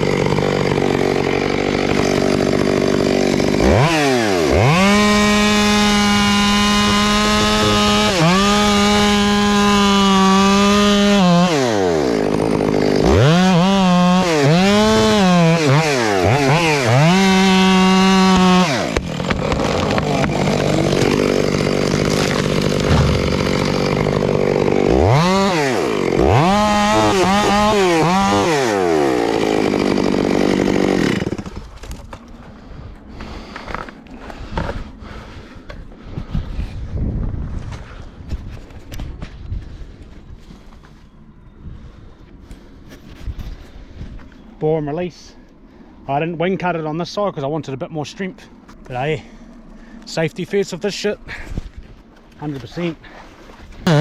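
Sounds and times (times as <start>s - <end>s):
chainsaw cutting tree trunk: 0.0s - 32.3s, 53.7s - 54.0s.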